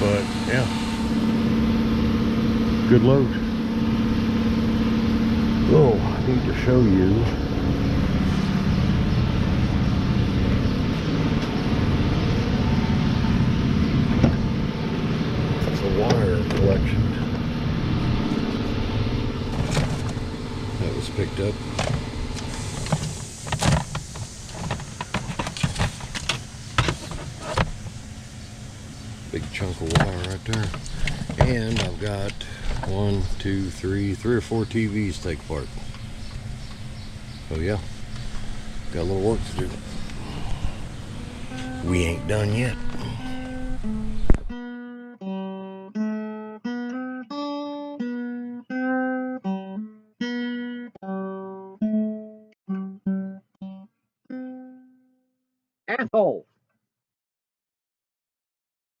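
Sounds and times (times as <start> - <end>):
plucked acoustic guitar: 0.0 - 23.0, 29.4 - 36.9, 37.9 - 54.9
low steady hum: 0.0 - 44.6
knocks and clatters: 19.5 - 20.2, 21.7 - 27.9.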